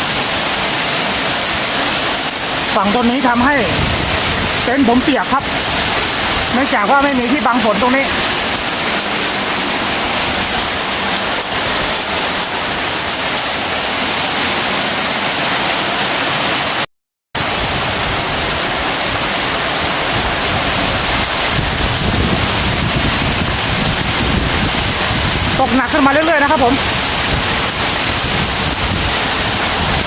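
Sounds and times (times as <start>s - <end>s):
heavy rain pouring: 0.0s - 30.0s.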